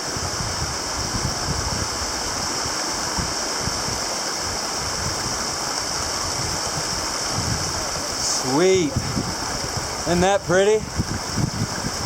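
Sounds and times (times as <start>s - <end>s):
mountain stream rushing: 0.0s - 12.0s.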